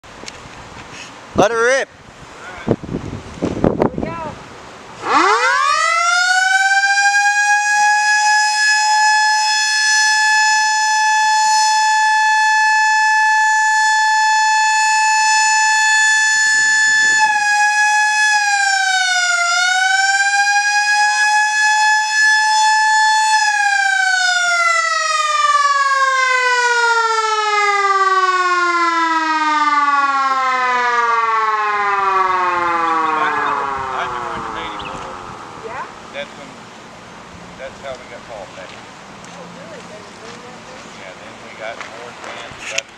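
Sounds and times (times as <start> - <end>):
electromechanical siren wailing: 5.0 - 36.5.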